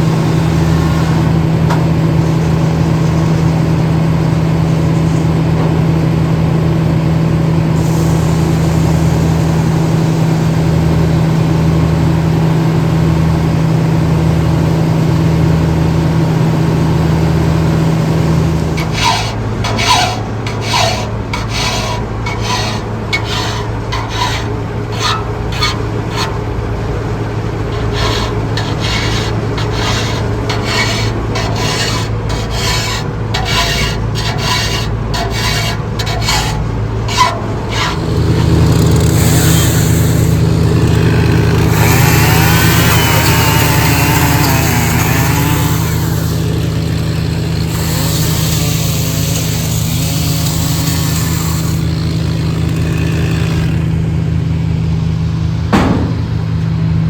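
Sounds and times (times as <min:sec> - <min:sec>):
sawmill engine running: 0:00.0 - 0:57.0
saw blade rasping through log: 0:17.6 - 0:54.3, 0:55.7 - 0:56.6.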